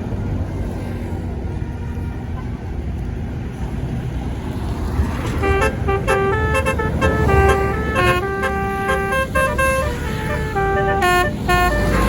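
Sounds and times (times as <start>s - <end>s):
low engine rumble: 0.0s - 12.0s
bus horn playing a tune: 0.7s - 2.8s, 5.2s - 12.0s.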